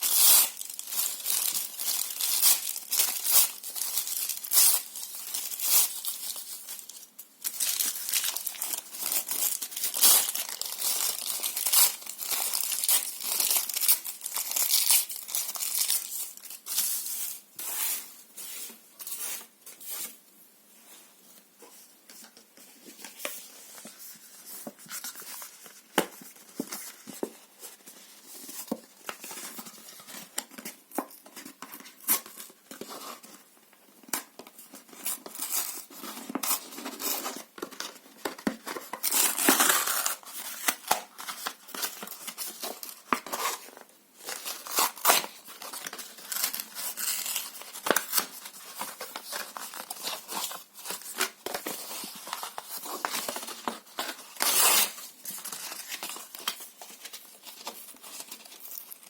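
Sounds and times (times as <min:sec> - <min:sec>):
paper and cardboard tearing: 0:54.1 - 0:55.0.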